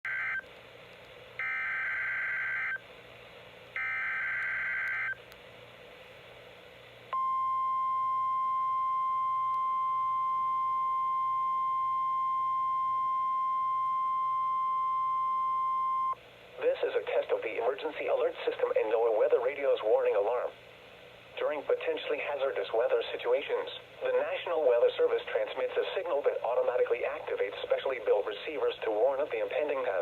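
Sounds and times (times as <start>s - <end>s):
steady warning alarm tone: 0.1s - 0.4s, 1.4s - 2.8s, 3.8s - 5.2s.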